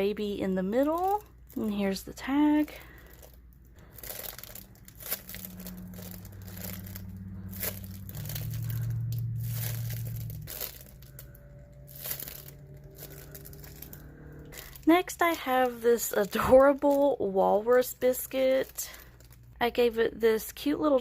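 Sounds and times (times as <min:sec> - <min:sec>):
low steady hum: 0:00.0 - 0:21.0
foam and paper crinkling: 0:00.5 - 0:21.0.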